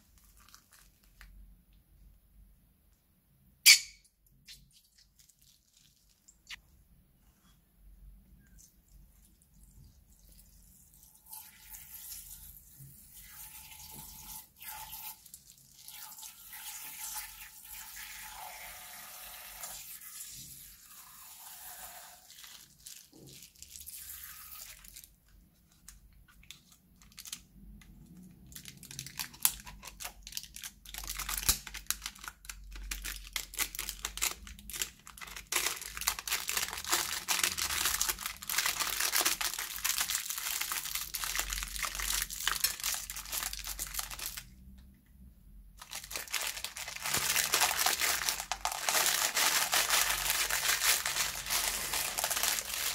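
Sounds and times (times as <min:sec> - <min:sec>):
plastic bag crinkling: 0:00.0 - 0:01.4, 0:22.3 - 0:23.9, 0:24.5 - 0:27.5, 0:28.4 - 0:44.6, 0:45.8 - 0:52.9
slime squishing: 0:45.8 - 0:52.9.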